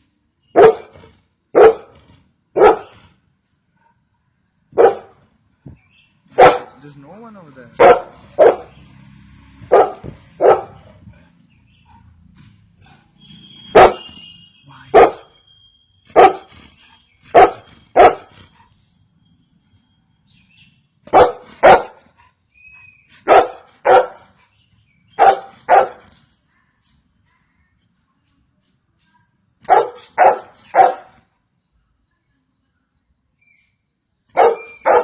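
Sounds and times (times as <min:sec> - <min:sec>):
dog barking: 0:00.5 - 0:03.0, 0:03.8 - 0:05.2, 0:06.3 - 0:06.8, 0:07.8 - 0:08.8, 0:09.6 - 0:11.0, 0:13.7 - 0:14.2, 0:14.9 - 0:15.4, 0:16.1 - 0:16.5, 0:17.3 - 0:18.3, 0:21.1 - 0:22.1, 0:23.2 - 0:24.4, 0:25.1 - 0:26.1, 0:29.6 - 0:31.3, 0:34.3 - 0:35.0.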